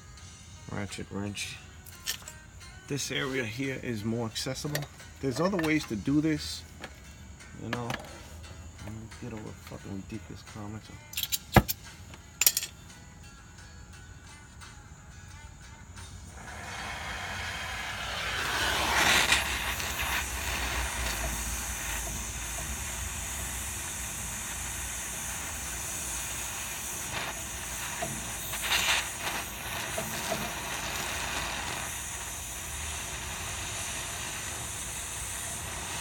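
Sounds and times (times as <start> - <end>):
gas torch hissing: 2.9 - 10.1, 16.2 - 36.0.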